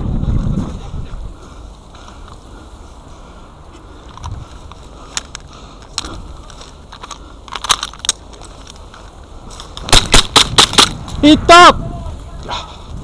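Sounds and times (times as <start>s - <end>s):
faint background noise: 0.0s - 13.0s
sharp clicks and light knocks: 4.0s - 11.2s.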